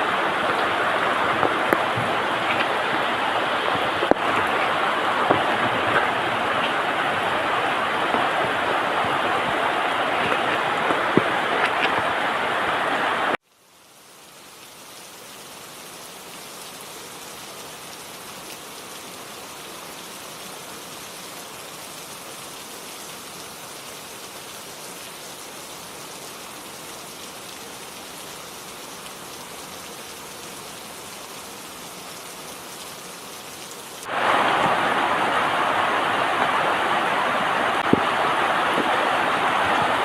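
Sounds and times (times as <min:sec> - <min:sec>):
steady rainfall: 0:00.0 - 0:40.0.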